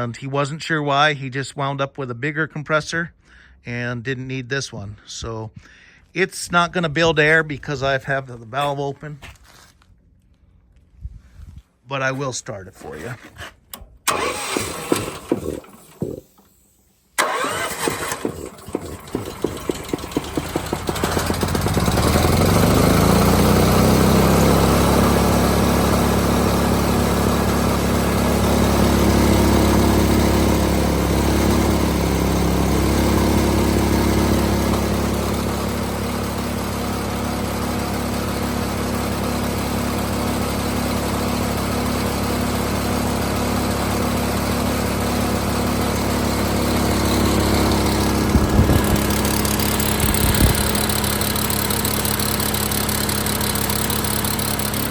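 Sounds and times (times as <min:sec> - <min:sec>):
engine cranking: 0:12.8 - 0:16.5, 0:17.2 - 0:23.2, 0:46.8 - 0:54.9
air compressor engine running: 0:14.1 - 0:54.9.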